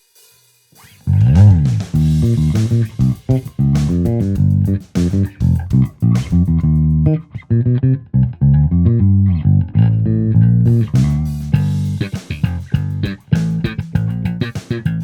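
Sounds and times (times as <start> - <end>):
electric bass plucked notes: 1.1 - 15.0.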